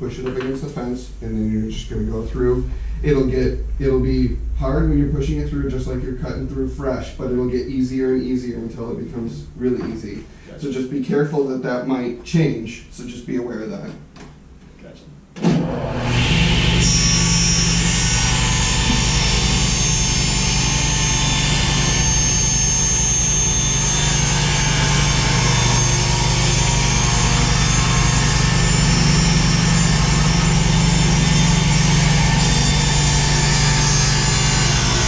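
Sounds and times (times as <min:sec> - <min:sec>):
table saw running: 0:15.5 - 0:35.0.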